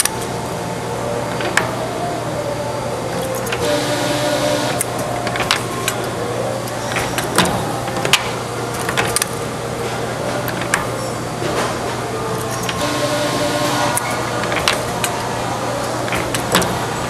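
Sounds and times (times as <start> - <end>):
machine humming: 0.0 - 17.0.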